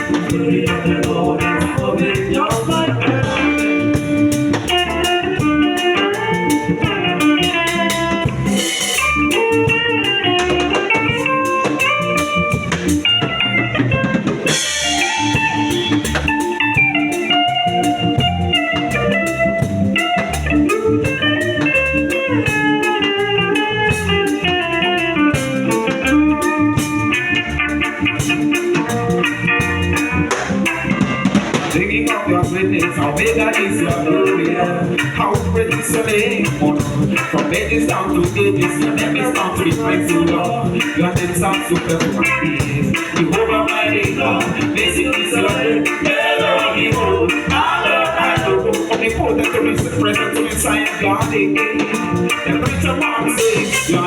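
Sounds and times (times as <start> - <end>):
melodic lead line: 0.0 - 54.0
steady drum beat: 0.0 - 54.0.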